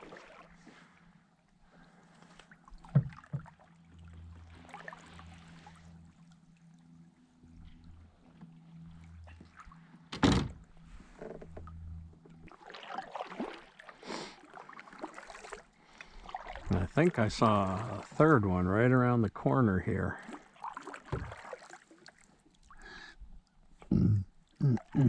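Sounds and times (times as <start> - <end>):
water splashing: 0.0 - 1.0, 1.7 - 10.0, 10.7 - 23.1, 24.4 - 25.0
hollow thunk on kayak hull: 2.8 - 3.6, 10.1 - 10.6, 21.0 - 21.7.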